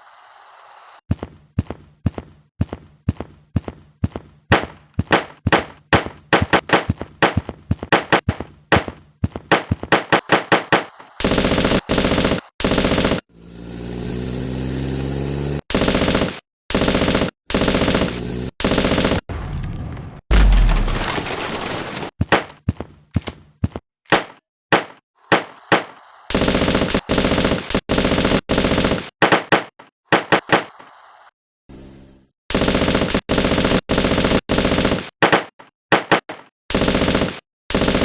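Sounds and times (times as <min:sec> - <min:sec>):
machine gun bursts: 0:10.0 - 0:13.2, 0:15.7 - 0:19.2, 0:26.3 - 0:29.1, 0:32.5 - 0:35.1, 0:36.7 - 0:38.0
engine rising in pitch: 0:13.3 - 0:15.6.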